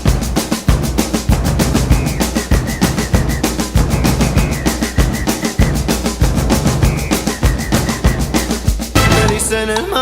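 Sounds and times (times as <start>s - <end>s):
music with fast drum beat: 0.0s - 10.0s.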